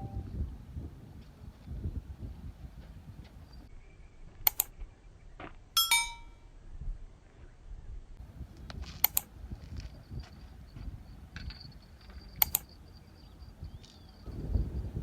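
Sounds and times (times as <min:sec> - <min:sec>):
sharp clicks: 0:04.4 - 0:04.7, 0:09.0 - 0:09.3, 0:12.4 - 0:12.7
ringing metallic clink: 0:05.8 - 0:06.4.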